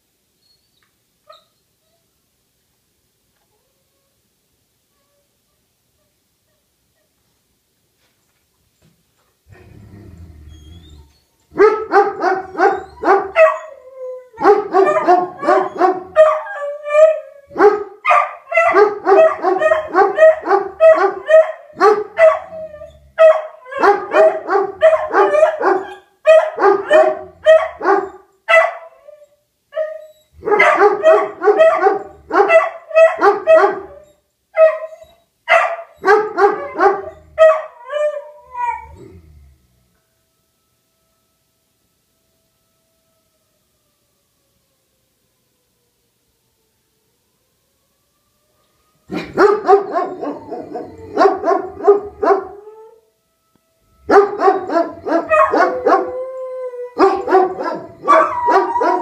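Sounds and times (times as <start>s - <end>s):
dogs baying and howling: 10.4s - 39.5s, 49.1s - 53.0s, 54.0s - 59.0s
tornado siren: 11.8s - 17.6s, 18.6s - 28.3s, 30.4s - 34.0s, 36.0s - 59.0s.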